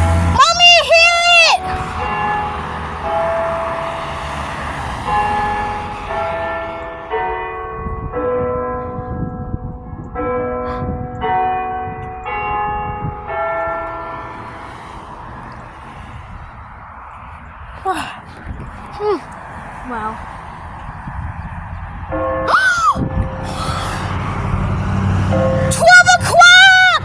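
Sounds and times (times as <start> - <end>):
church bells chiming a tune: 0.0 - 15.5, 22.0 - 27.0.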